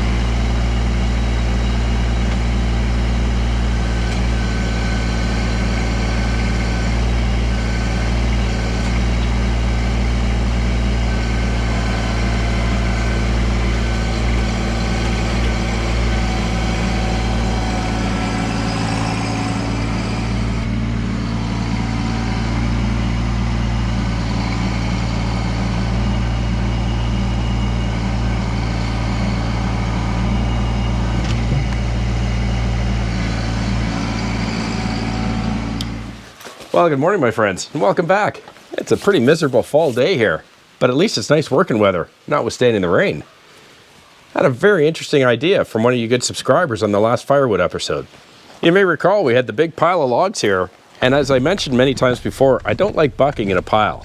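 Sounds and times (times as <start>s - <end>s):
tractor diesel engine running: 0.0s - 38.2s, 50.4s - 54.0s.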